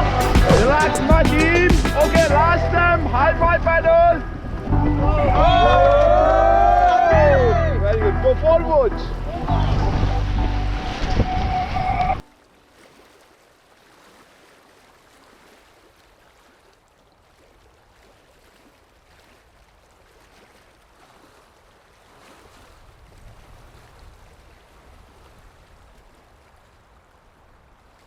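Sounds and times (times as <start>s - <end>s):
river water rushing: 0.0s - 23.0s
low rumble: 2.2s - 12.2s.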